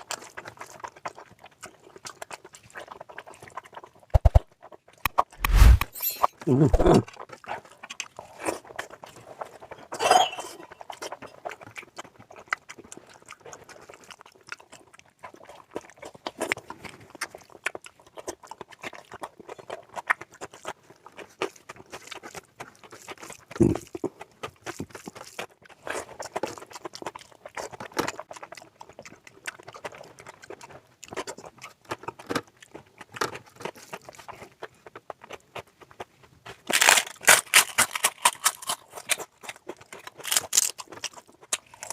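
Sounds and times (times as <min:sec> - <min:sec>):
person chewing with wet smacks: 0:00.0 - 0:05.8, 0:06.4 - 0:41.9.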